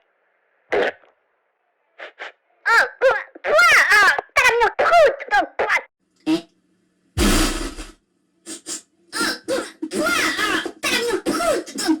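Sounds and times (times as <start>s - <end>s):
cartoon voices chattering: 2.7s - 5.9s, 9.2s - 12.0s
fart sound effect: 7.2s - 8.0s.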